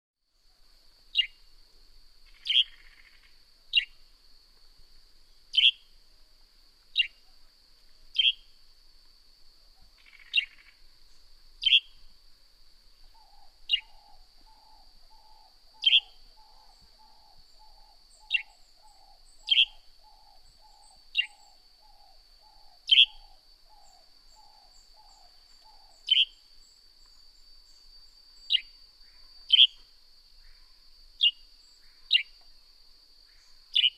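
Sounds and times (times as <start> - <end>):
sparrow chirping: 2.3 - 3.0, 5.5 - 5.8, 8.2 - 8.4, 11.6 - 12.0, 13.2 - 26.4, 28.4 - 28.8, 29.5 - 29.8, 31.2 - 32.4.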